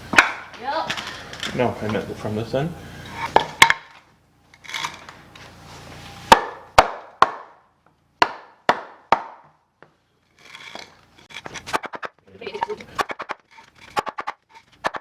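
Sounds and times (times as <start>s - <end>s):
tool striking wood: 0.1s - 0.5s, 3.2s - 4.0s, 6.3s - 7.6s, 8.2s - 9.6s, 10.6s - 15.0s.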